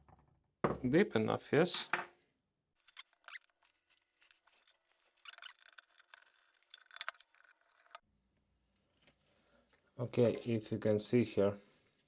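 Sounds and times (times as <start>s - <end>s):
electronic parts clicking and scraping: 2.8s - 8.0s.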